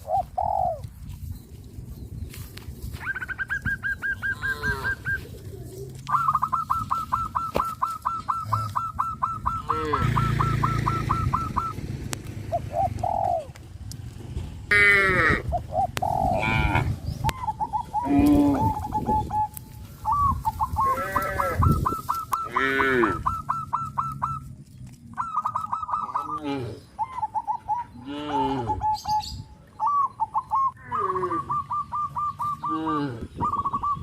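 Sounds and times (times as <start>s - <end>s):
poultry calling: 2.9s - 13.6s, 14.7s - 34.0s
cattle mooing: 9.6s - 10.3s, 14.7s - 15.5s, 20.8s - 21.6s, 22.4s - 23.2s.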